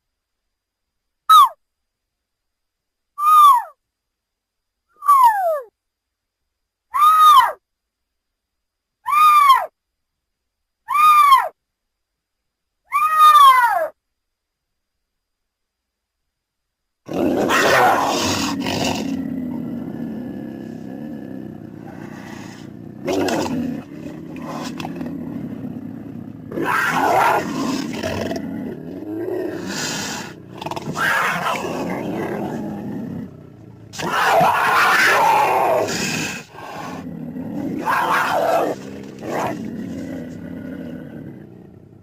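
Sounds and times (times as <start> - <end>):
long rumbling growl: 17.1 - 42.0
wild cat snarling: 17.1 - 42.0.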